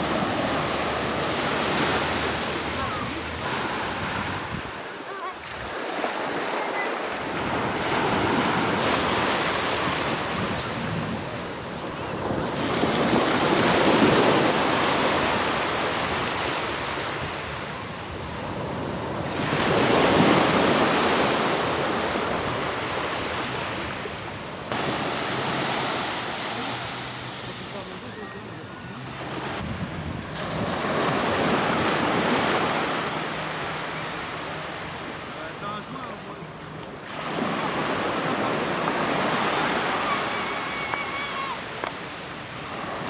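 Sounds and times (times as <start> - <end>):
wind buffeting microphone: 0.0 - 35.1
sea waves breaking: 0.0 - 43.0.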